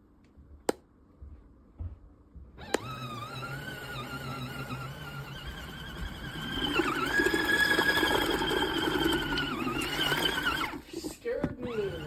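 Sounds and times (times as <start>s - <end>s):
small electric motor whine: 2.6s - 10.8s.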